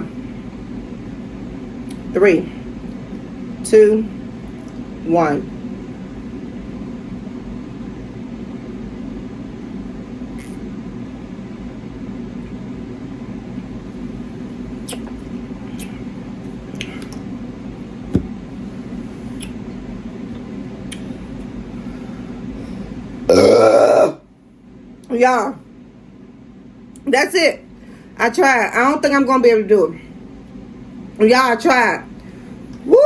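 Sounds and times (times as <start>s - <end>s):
woman burping: 23.3s - 24.2s.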